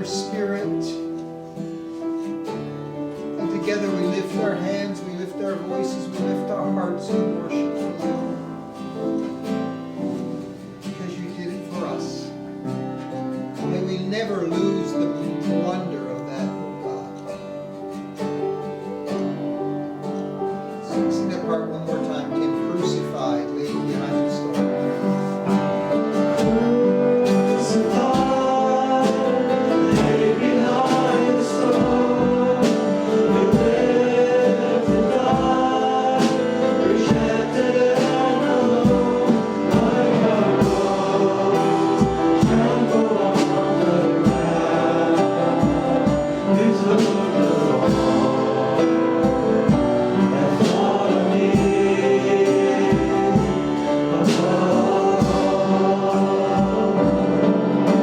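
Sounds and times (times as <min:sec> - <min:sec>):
congregation singing: 0:00.0 - 0:18.0, 0:18.7 - 0:58.0
band accompaniment with steady beat: 0:24.0 - 0:58.0.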